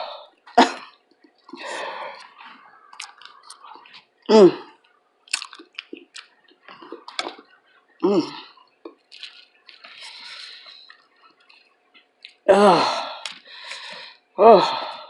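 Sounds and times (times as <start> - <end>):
wet chewing and mouth smacks: 0.3 - 12.4, 13.2 - 13.5
person exclaiming: 4.3 - 4.7, 12.5 - 13.0.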